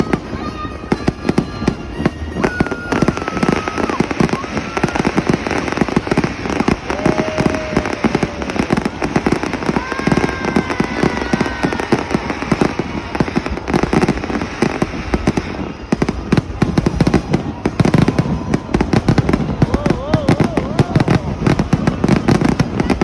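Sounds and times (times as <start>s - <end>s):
fireworks popping and crackling: 0.0s - 23.0s.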